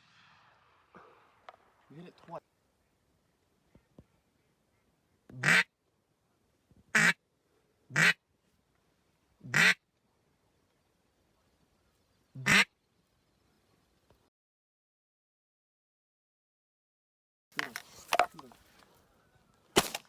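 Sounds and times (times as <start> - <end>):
harsh duck quacks: 5.3 - 5.7, 6.9 - 7.2, 7.9 - 8.2, 9.4 - 9.8, 12.4 - 12.7.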